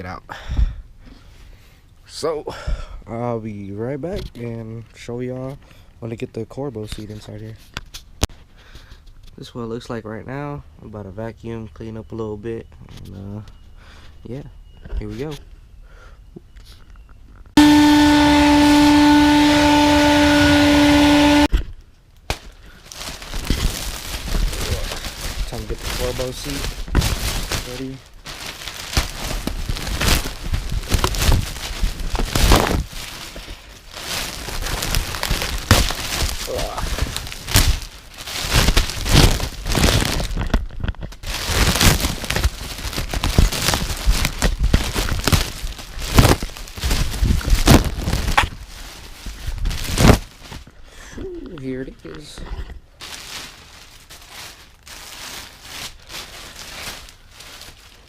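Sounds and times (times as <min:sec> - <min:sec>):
rustling: 0:16.6 - 0:58.0
vacuum cleaner motor whining: 0:17.6 - 0:21.5.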